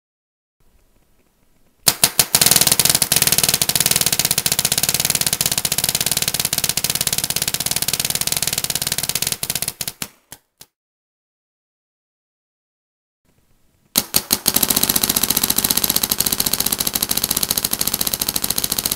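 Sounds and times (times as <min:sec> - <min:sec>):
paintball marker firing: 0:01.8 - 0:10.4, 0:14.0 - 0:18.9.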